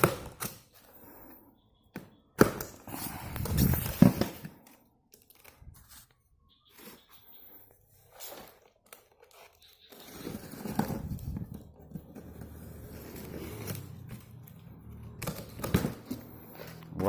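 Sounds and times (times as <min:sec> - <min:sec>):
cardboard scraping and crinkling: 0:02.9 - 0:04.5, 0:05.4 - 0:14.4.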